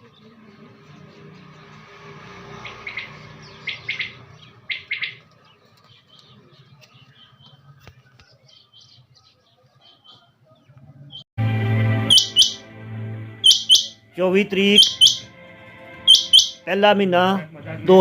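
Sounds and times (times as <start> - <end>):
quail calling: 2.6 - 5.2, 12.1 - 12.6, 13.4 - 14.0, 14.7 - 15.3, 16.1 - 16.7.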